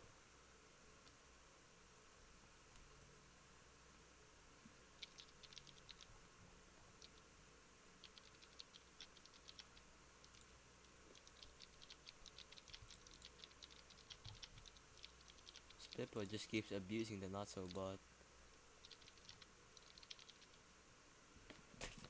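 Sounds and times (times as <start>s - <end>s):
keyboard typing: 5.0s - 6.1s, 8.0s - 16.5s, 18.8s - 20.6s.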